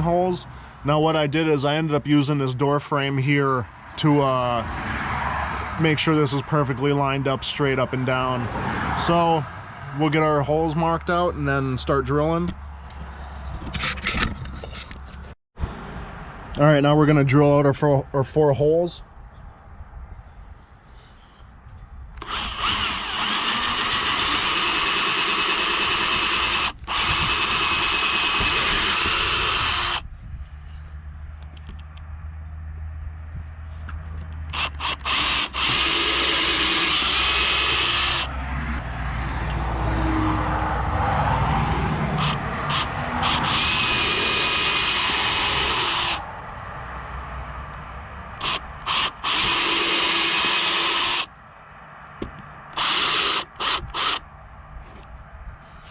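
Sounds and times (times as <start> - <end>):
power drill boring: 22.2 - 30.0, 34.5 - 38.3, 42.2 - 46.2, 48.4 - 51.3, 52.7 - 54.2.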